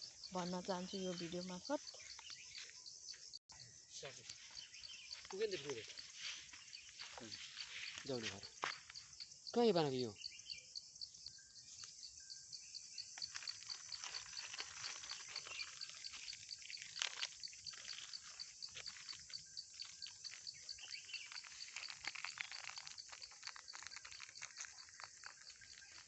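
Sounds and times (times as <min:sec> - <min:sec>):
goats chewing foliage: 0:13.4 - 0:26.0.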